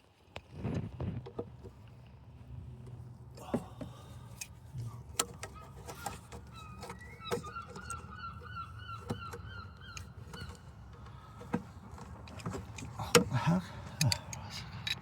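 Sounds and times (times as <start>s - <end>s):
birds honking: 5.3s - 11.8s.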